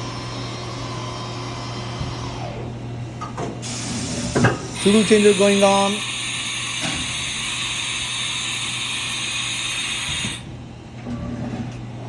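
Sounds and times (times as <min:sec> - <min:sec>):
low machine hum: 0:00.0 - 0:12.0
steady hiss: 0:04.8 - 0:10.3.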